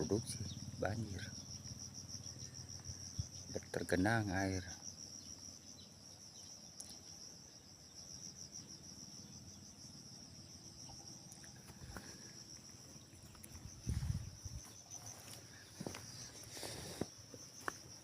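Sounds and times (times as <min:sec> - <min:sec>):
insects trilling: 0:00.0 - 0:18.0.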